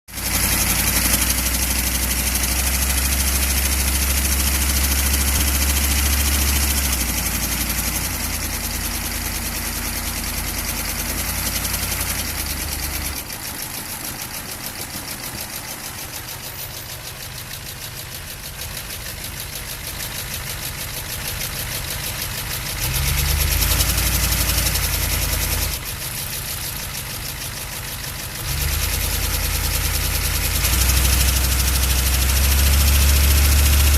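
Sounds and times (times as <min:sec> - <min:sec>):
diesel engine knocking: 0:00.1 - 0:33.9.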